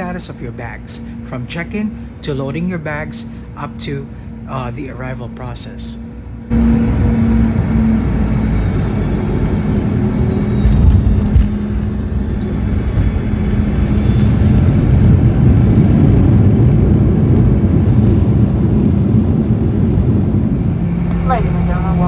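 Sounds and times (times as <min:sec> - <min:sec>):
airplane cabin engine rumble: 0:00.0 - 0:22.0
jet engine whine: 0:00.0 - 0:22.0
wheels touching down thumps: 0:10.5 - 0:17.5.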